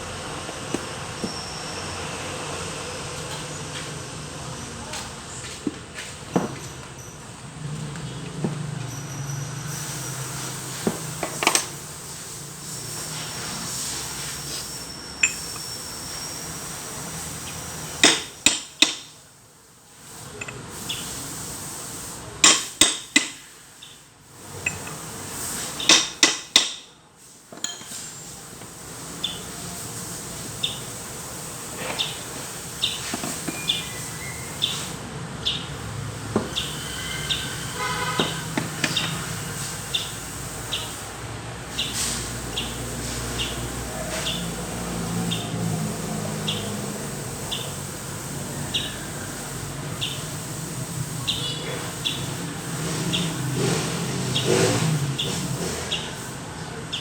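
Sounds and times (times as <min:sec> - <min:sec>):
metal tools knocking on metal: 0:15.2 - 0:15.7, 0:17.9 - 0:19.1, 0:22.4 - 0:23.4, 0:24.6 - 0:25.1, 0:25.8 - 0:26.9, 0:27.5 - 0:28.2, 0:36.3 - 0:39.3.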